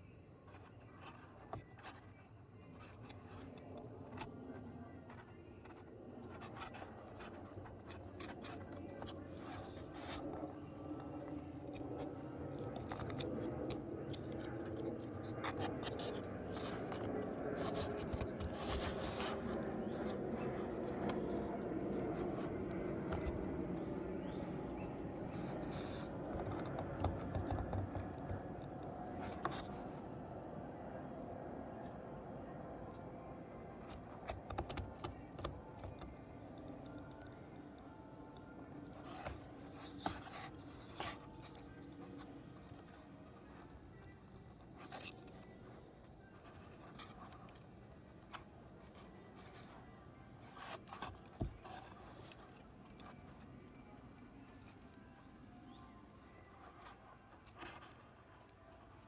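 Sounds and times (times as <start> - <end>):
blade scraping wood: 2.9 - 28.7.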